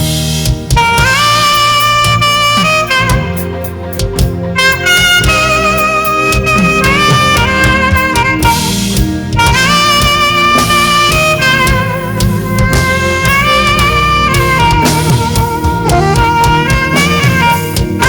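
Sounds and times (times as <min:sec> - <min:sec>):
backing band with drum kit: 0:00.0 - 0:18.0
saxophone playing slow melody: 0:00.0 - 0:18.0.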